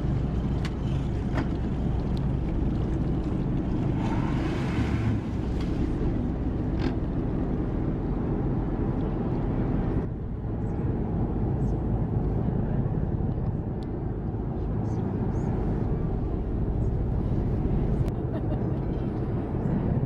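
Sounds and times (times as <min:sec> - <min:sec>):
boat engine rumbling: 0:00.0 - 0:20.0.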